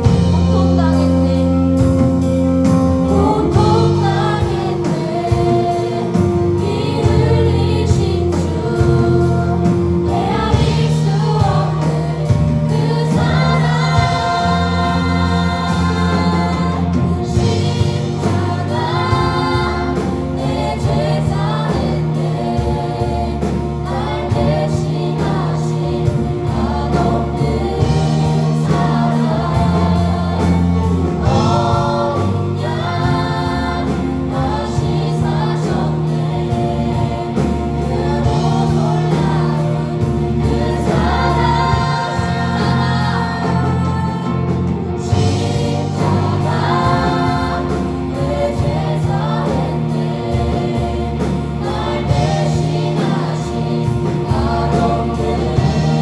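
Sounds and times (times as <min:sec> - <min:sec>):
bass notes: 0:00.0 - 0:56.0
group singing praise song: 0:00.0 - 0:56.0
live band accompaniment: 0:00.0 - 0:56.0.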